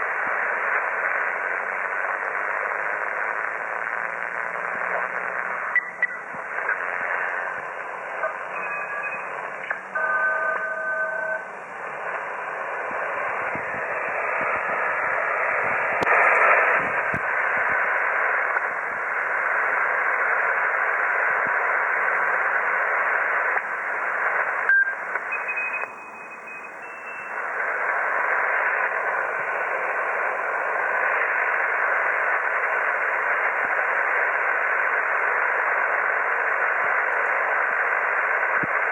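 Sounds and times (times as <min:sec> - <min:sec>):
radio interference hiss: 0:00.0 - 0:38.9
radio carrier whistles: 0:19.8 - 0:34.7.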